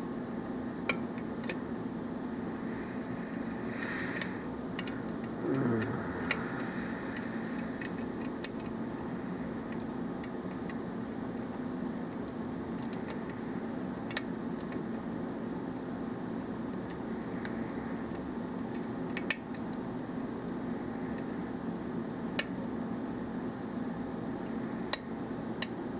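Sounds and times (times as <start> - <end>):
steady low hum: 0.9 - 14.1.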